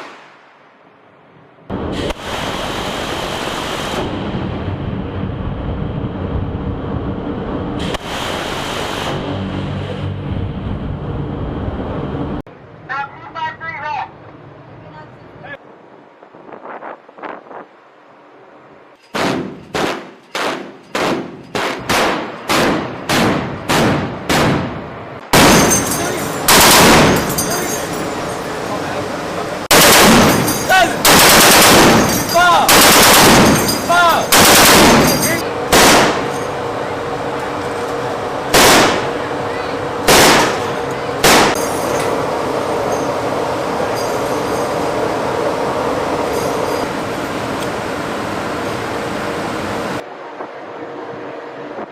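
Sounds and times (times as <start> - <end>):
loud long gun blast: 0.0 - 1.0, 1.7 - 11.2, 19.1 - 27.4, 29.7 - 37.2, 38.3 - 43.7
steady rumbling background: 0.0 - 51.9
heavy gun firing single shots: 19.1 - 27.3, 29.7 - 36.3, 38.5 - 39.2, 40.0 - 41.7.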